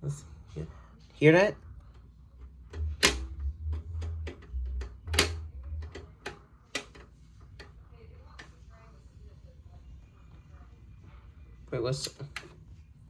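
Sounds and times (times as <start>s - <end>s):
low rumble: 2.4s - 6.2s.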